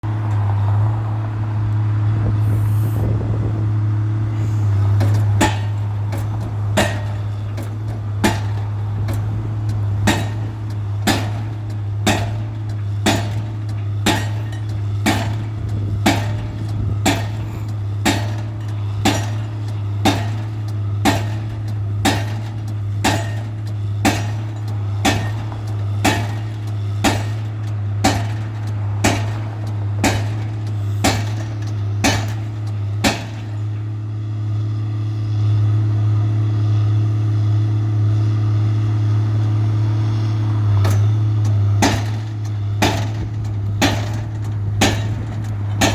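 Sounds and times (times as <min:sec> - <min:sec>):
steady engine drone: 0:00.0 - 0:45.9
pile driver strikes: 0:04.9 - 0:33.8, 0:40.9 - 0:45.9.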